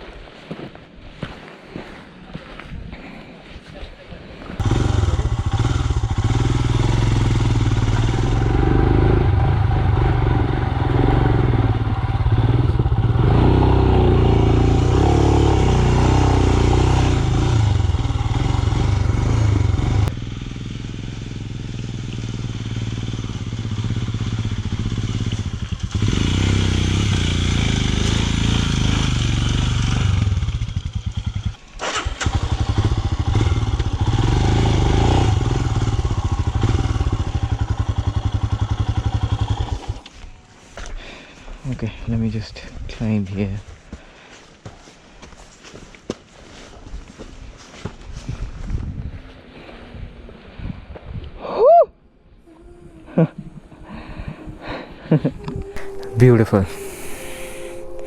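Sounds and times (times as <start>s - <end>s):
motorcycle engine running: 4.6s - 40.3s.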